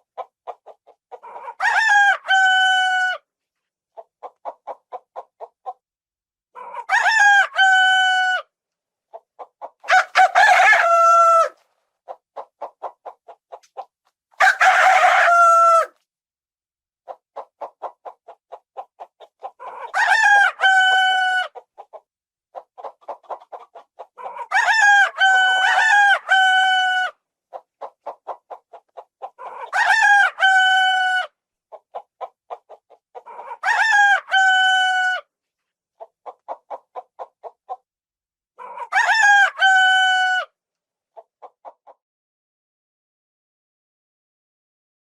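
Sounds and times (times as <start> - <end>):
rooster crowing: 1.4 - 3.2, 6.7 - 8.4, 9.9 - 11.6, 14.4 - 15.9, 19.9 - 21.5, 24.5 - 27.1, 29.7 - 31.3, 33.6 - 35.2, 38.6 - 40.5
short clucks: 12.1 - 14.2.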